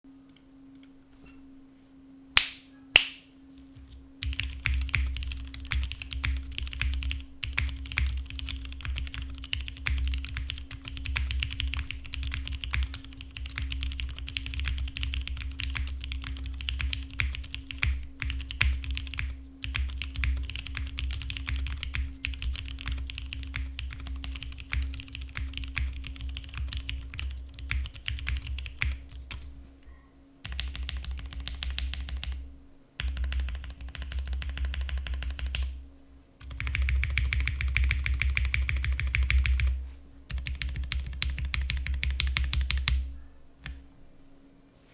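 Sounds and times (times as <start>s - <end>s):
faint steady hum: 0.0s - 44.9s
sharp snaps: 2.4s - 3.3s
fast mechanical keyboard typing: 3.7s - 29.5s, 30.4s - 32.4s, 33.0s - 35.7s, 36.4s - 43.0s.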